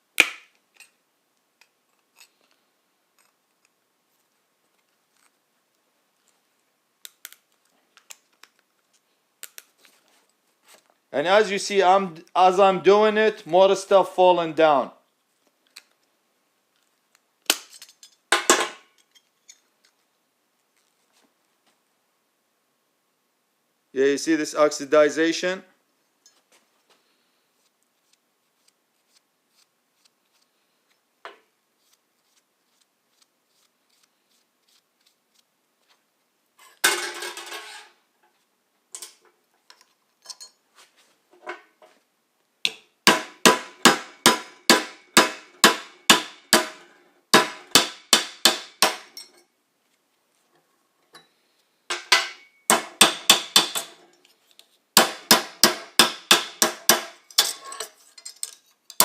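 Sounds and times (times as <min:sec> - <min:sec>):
hammer striking metal: 0:42.7 - 0:46.8, 0:47.4 - 0:49.2, 0:51.9 - 0:54.0, 0:55.0 - 0:57.6.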